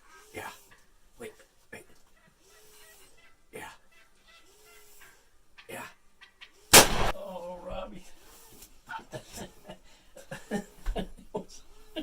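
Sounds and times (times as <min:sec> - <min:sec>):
loud shotgun shot: 0:06.7 - 0:07.2.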